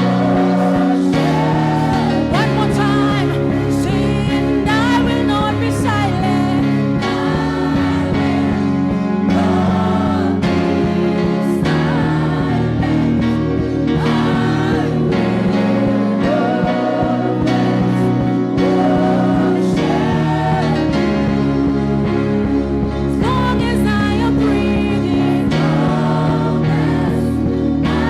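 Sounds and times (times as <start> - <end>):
held instrumental chords: 0.0 - 28.0
voices singing gospel: 0.0 - 28.0.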